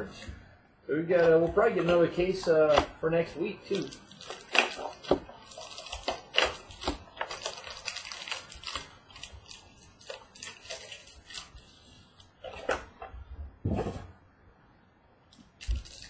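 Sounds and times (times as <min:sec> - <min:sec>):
wrappers crinkling and rustling: 0:01.0 - 0:13.0, 0:15.3 - 0:16.0.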